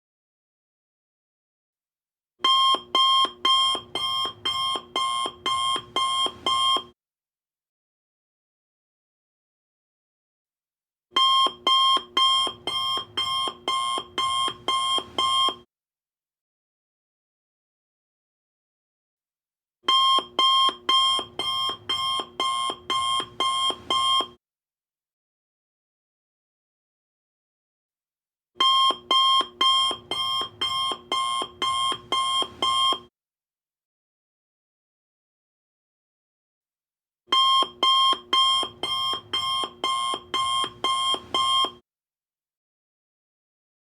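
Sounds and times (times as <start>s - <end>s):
electronic alarm beeping: 2.5s - 6.9s, 11.2s - 15.6s, 19.9s - 24.3s, 28.6s - 33.0s, 37.4s - 41.8s.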